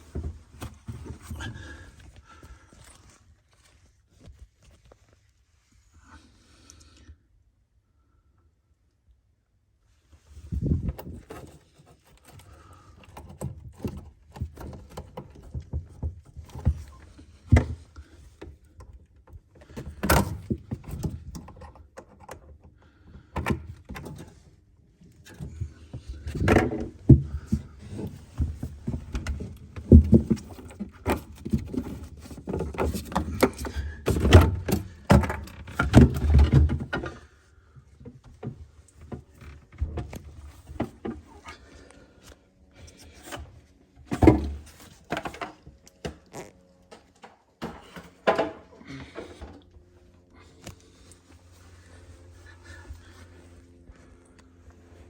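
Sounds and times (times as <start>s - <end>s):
knocks and clatter of tools: 25.2s - 37.2s, 44.1s - 49.6s.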